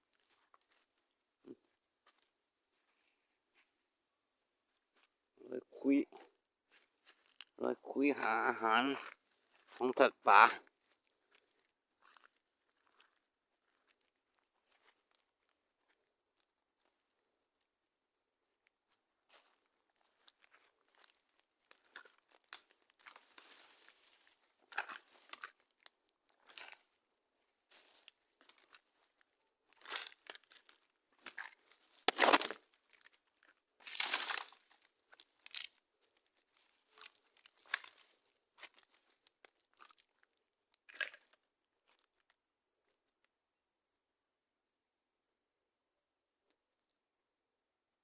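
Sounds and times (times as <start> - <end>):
footsteps crunching on dry leaves: 23.0 - 25.5, 31.3 - 32.6, 33.8 - 34.8, 35.4 - 35.7, 36.6 - 39.0.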